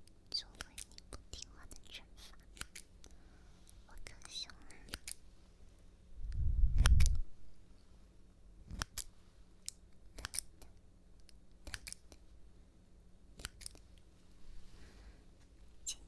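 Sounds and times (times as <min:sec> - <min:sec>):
scissors snipping: 0:02.4 - 0:03.0, 0:04.9 - 0:05.2, 0:08.6 - 0:12.2, 0:13.4 - 0:13.9.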